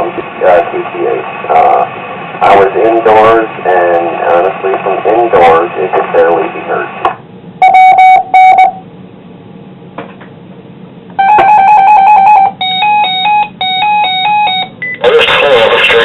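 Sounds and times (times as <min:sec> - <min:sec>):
faint radio hiss: 0:00.0 - 0:07.2, 0:15.0 - 0:16.0
warbling radio tone: 0:15.0 - 0:16.0.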